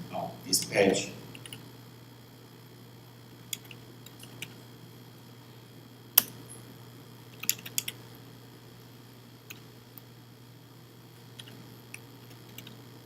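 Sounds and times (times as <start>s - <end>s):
computer keyboard keystrokes: 7.4s - 8.0s, 11.4s - 12.8s.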